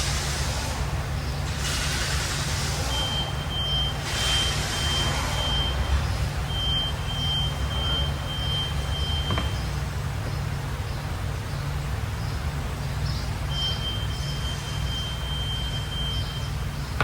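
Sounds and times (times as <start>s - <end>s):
bursts of hiss: 0.0s - 3.2s, 3.9s - 5.4s
low steady rumble: 0.0s - 17.0s
high electronic warning tone: 2.9s - 9.6s, 13.5s - 16.7s.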